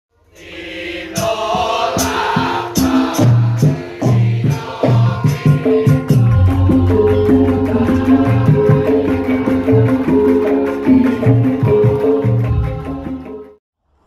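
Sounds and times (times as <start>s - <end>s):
gamelan ensemble playing: 5.7s - 13.6s
kettle gongs ringing: 6.2s - 11.9s.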